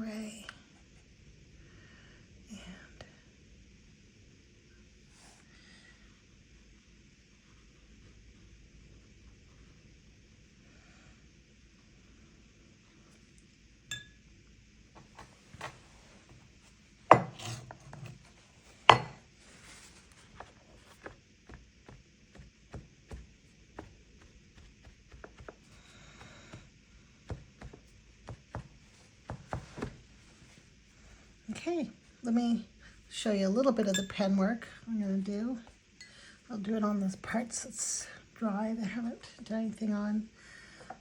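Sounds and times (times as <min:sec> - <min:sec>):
knocks on tabletop: 0:18.9 - 0:19.2.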